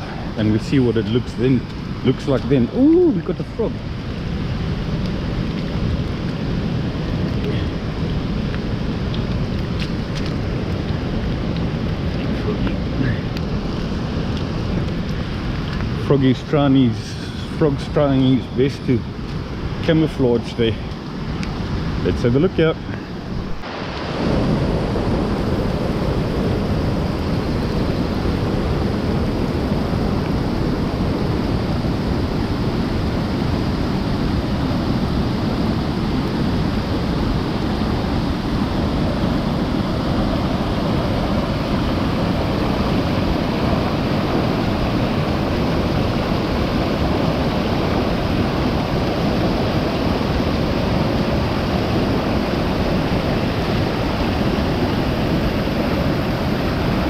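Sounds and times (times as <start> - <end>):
stream rushing in flood: 0.0 - 57.0.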